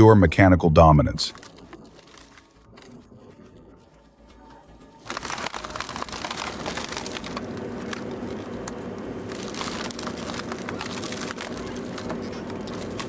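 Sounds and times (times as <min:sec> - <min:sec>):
machine hum: 0:00.0 - 0:13.0
shredder chewing wood: 0:00.8 - 0:04.2, 0:05.0 - 0:13.0
splintering wood cracks: 0:05.0 - 0:08.0, 0:09.3 - 0:13.0.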